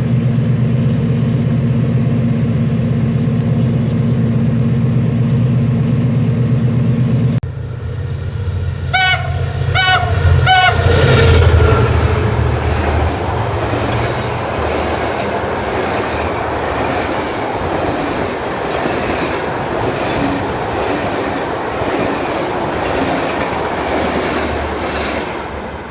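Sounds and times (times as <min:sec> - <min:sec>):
train wheels rumbling and clattering: 0:00.0 - 0:08.8, 0:09.9 - 0:25.9
diesel locomotive engine running: 0:00.0 - 0:25.9
train horn blasts: 0:08.8 - 0:12.5.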